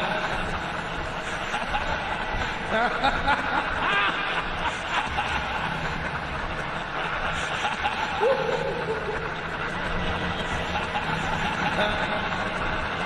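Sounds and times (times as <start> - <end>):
man chuckling: 0.0 - 13.0
steady noisy hiss: 0.0 - 13.0.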